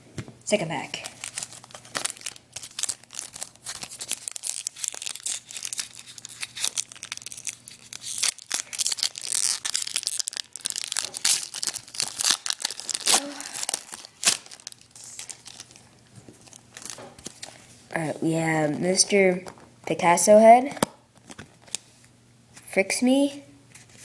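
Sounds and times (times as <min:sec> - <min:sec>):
wrapper tearing and crinkling: 0:01.0 - 0:17.6.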